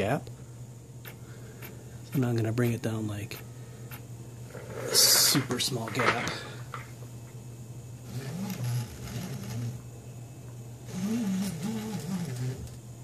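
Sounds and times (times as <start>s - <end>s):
steady low hum: 0.0s - 13.0s
stepper motors whining: 8.0s - 9.9s, 10.8s - 12.8s.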